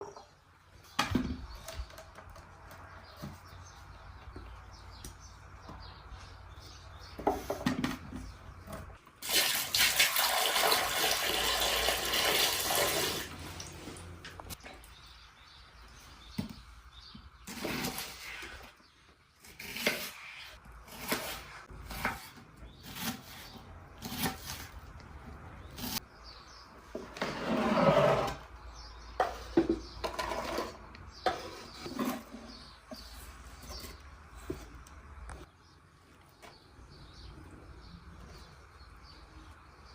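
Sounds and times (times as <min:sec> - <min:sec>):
water pouring and splashing: 0:09.2 - 0:14.2.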